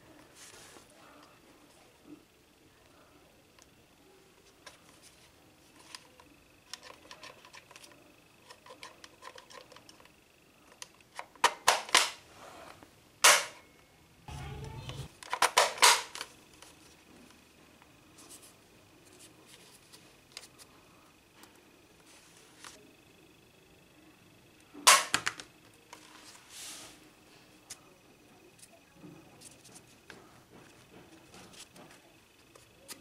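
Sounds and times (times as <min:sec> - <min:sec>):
plastic toy gun clicks: 0:11.2 - 0:12.2, 0:15.2 - 0:16.3, 0:24.9 - 0:25.4.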